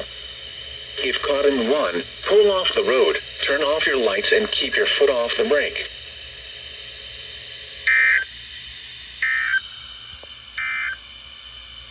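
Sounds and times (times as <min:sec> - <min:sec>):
warbling digital tone bursts: 0:07.9 - 0:08.3, 0:09.2 - 0:10.0, 0:10.6 - 0:11.0.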